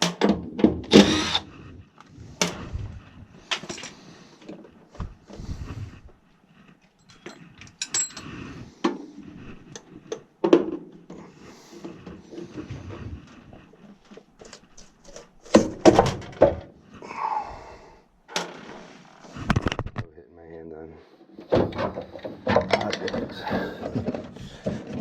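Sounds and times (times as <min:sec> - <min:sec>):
clicks knocks and scrapes of parts: 0:03.5 - 0:05.1, 0:06.6 - 0:16.7, 0:18.3 - 0:20.1, 0:21.4 - 0:25.0.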